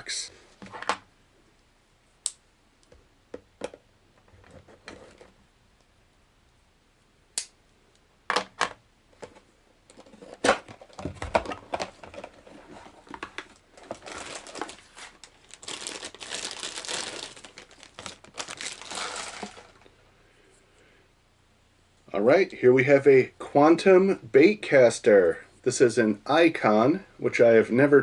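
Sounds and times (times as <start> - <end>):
packing material crinkling: 10.8 - 19.9.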